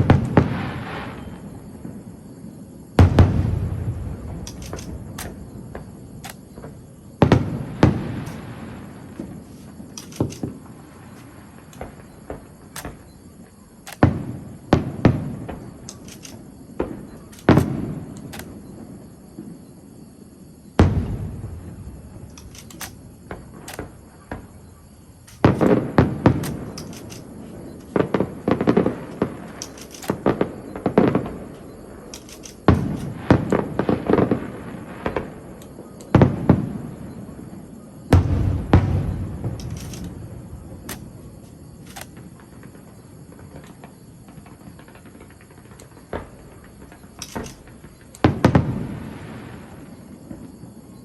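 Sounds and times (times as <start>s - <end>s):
fireworks bangs: 0.0s - 2.1s, 3.0s - 19.6s, 20.8s - 35.6s.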